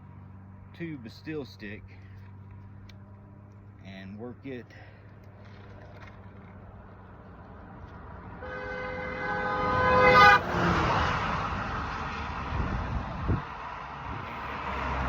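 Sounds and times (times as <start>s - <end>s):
vehicle passing by: 0.0s - 15.0s
vehicle horn: 8.4s - 11.2s.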